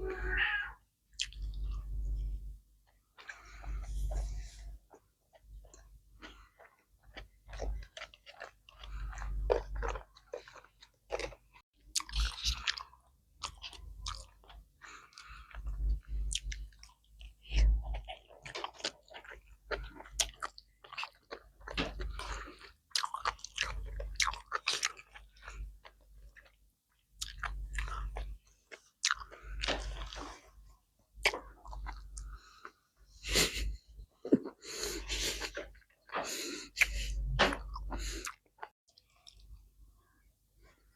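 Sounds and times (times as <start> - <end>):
close chewing with mouth smacks: 1.2 - 1.7, 2.8 - 32.8, 34.2 - 39.6
food crunches: 7.0 - 12.8.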